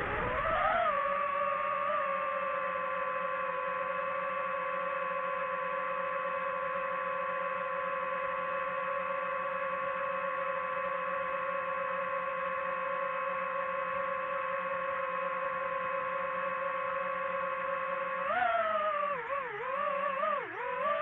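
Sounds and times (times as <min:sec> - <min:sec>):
drone propellers whining: 0:00.0 - 0:02.6, 0:15.0 - 0:21.0.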